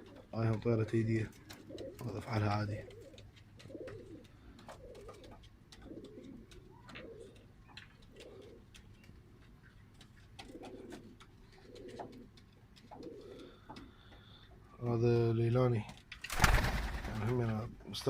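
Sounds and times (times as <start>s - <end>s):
pigeons cooing: 0.0s - 9.2s, 10.0s - 14.7s.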